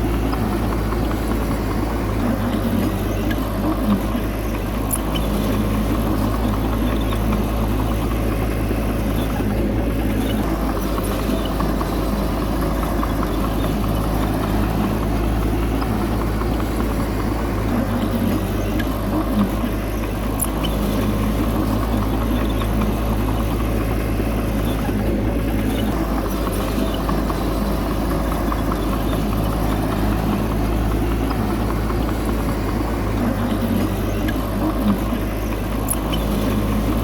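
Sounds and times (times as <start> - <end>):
heavy diesel engine running: 0.0 - 37.0.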